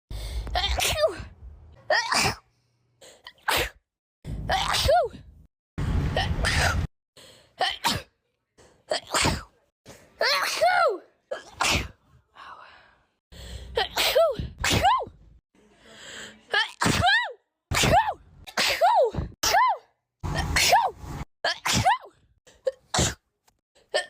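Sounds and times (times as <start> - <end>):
person sneezing: 1.9 - 2.4, 8.9 - 9.6, 10.3 - 12.0, 21.5 - 22.1, 22.9 - 23.2.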